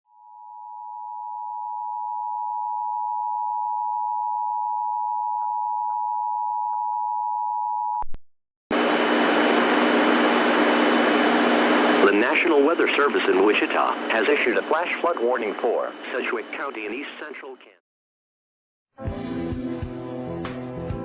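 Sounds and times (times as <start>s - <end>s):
radio hiss with faint hum: 8.7s - 17.8s.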